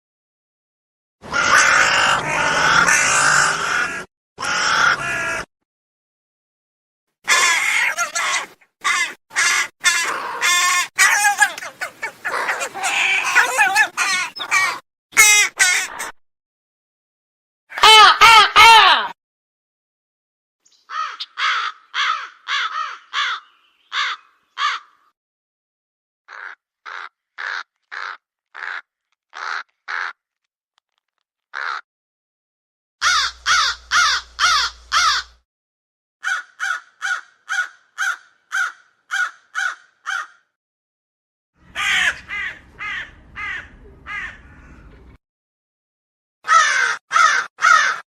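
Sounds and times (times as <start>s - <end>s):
crows cawing: 1.3s - 5.5s, 7.3s - 16.2s, 20.9s - 25.1s, 26.3s - 30.2s, 31.5s - 31.8s, 33.0s - 35.4s, 36.2s - 40.6s, 41.7s - 44.9s, 46.4s - 48.0s.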